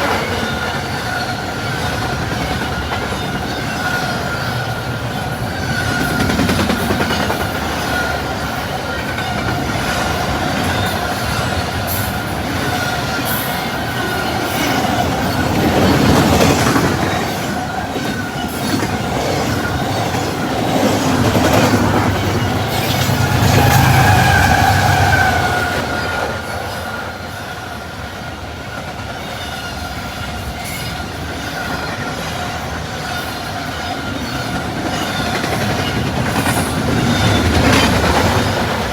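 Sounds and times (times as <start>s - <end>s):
train wheels clattering on rails: 0.0s - 38.9s
high-pitched wheel squeal: 22.2s - 26.8s.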